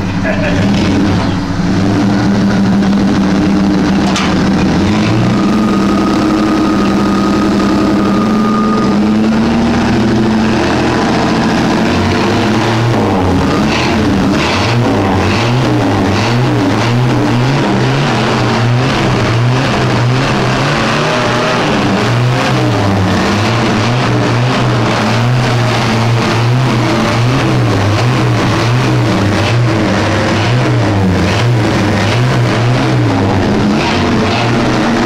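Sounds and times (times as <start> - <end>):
car engine running at low revs: 0.0 - 35.0.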